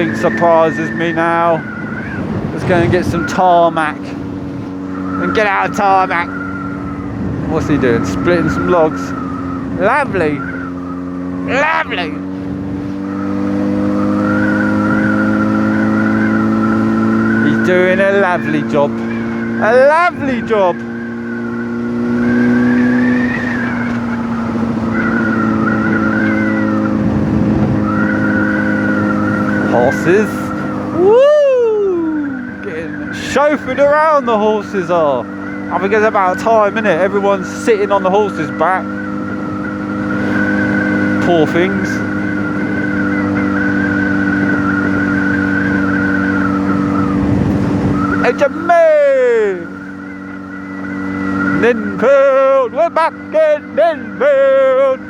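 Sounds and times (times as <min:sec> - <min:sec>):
motorcycle engine running: 0:00.0 - 0:55.0
road and wind noise: 0:00.0 - 0:55.0
high wavering whine: 0:04.6 - 0:12.4, 0:13.0 - 0:55.0.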